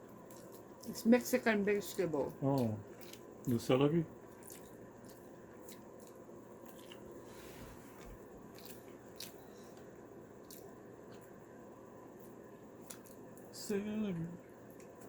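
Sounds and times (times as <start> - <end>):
chewing clicks and smacks: 2.5 - 3.6, 4.3 - 7.1, 8.5 - 11.4, 12.8 - 13.5.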